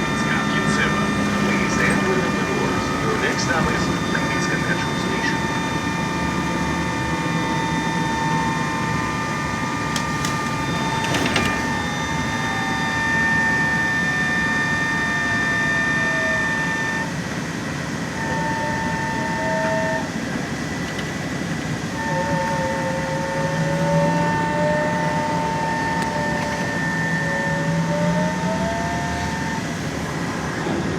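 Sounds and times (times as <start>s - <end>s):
electric drive whining: 0.0s - 30.9s
clicks and rattles: 9.9s - 11.8s.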